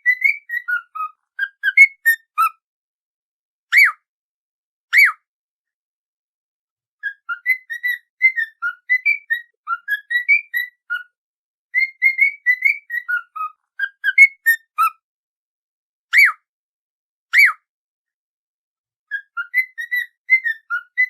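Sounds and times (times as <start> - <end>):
whistled tune: 0.0 - 2.5, 3.7 - 4.0, 4.9 - 5.3, 7.0 - 11.2, 11.8 - 15.0, 16.1 - 16.5, 17.3 - 17.7, 19.1 - 21.0.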